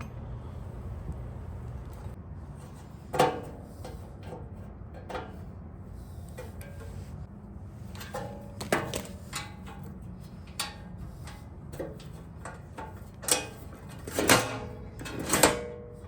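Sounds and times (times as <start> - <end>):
low hum: 0.0 - 2.9.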